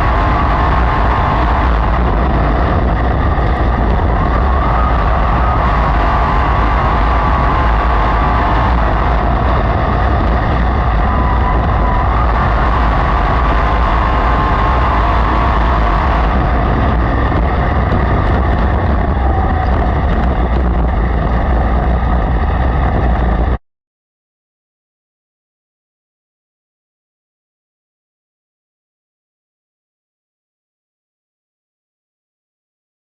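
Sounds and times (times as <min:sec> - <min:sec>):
racing car engines: 0:00.0 - 0:23.6.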